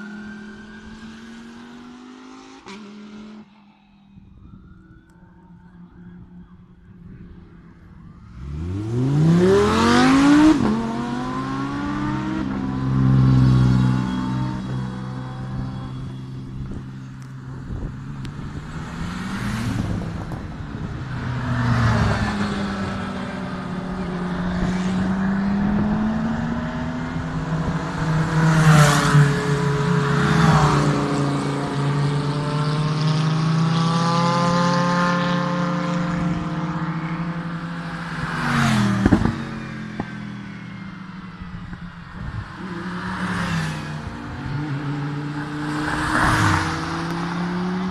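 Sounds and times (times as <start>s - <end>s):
race car engines revving: 0.0s - 47.9s.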